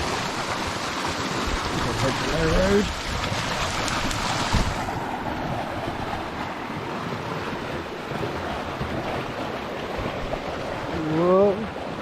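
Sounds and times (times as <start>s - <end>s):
creek water rushing: 0.0s - 12.0s
knock on log: 4.5s - 4.9s.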